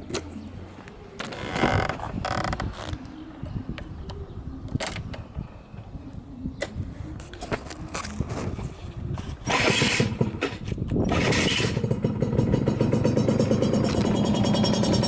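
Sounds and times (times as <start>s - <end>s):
scooter engine firing: 9.4s - 15.0s.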